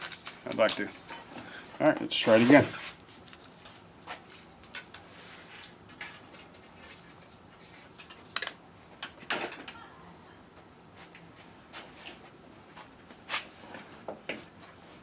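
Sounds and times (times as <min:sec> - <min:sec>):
light scraping and rustling: 0:00.3 - 0:08.3.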